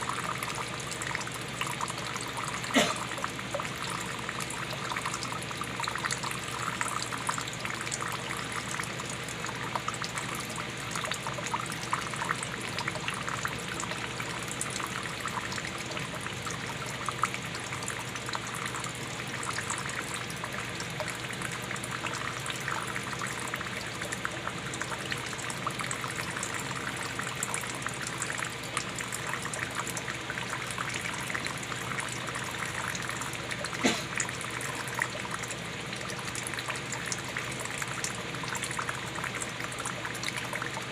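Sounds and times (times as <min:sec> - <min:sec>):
water pouring: 0:00.0 - 0:40.9.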